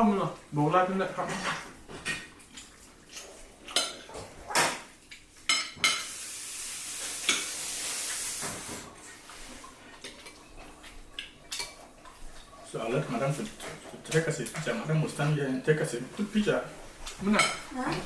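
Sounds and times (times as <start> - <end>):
plates and cutlery clinking: 1.2 - 6.2, 17.0 - 18.0
steady hiss: 5.8 - 9.0.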